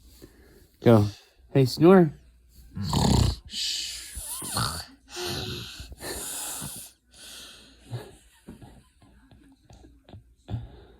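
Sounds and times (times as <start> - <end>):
wheezy snoring breaths: 2.7 - 8.8, 10.1 - 10.9.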